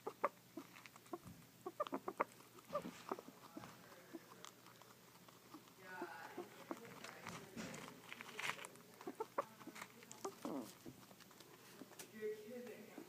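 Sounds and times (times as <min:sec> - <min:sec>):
animal calls: 0:00.0 - 0:07.0, 0:09.0 - 0:12.0
animal clicking while eating: 0:00.0 - 0:13.0.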